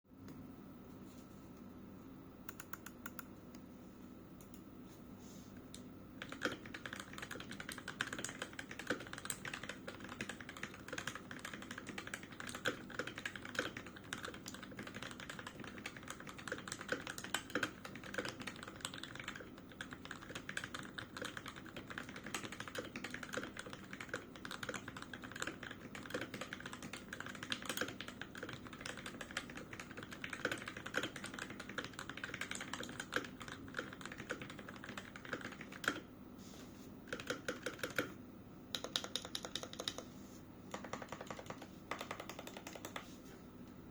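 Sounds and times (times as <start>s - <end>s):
typing on mechanical keyboard: 6.2s - 36.0s, 37.1s - 38.1s, 38.7s - 40.1s, 40.7s - 43.1s.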